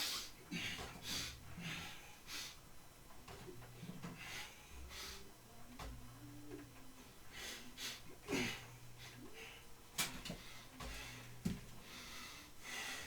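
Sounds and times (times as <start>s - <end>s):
faint steady hum: 0.0s - 13.0s
person breathing softly: 10.3s - 13.0s.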